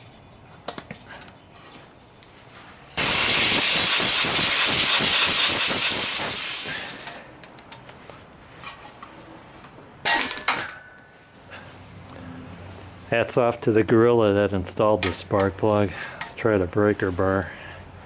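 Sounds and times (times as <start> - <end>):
escaping air hissing: 3.0 - 7.2.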